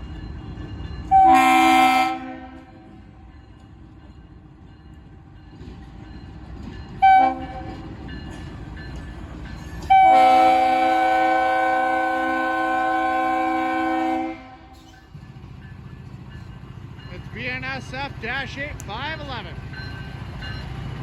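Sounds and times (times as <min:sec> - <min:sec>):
locomotive air horn blasts: 0:01.1 - 0:02.8, 0:07.0 - 0:07.8, 0:09.9 - 0:14.7.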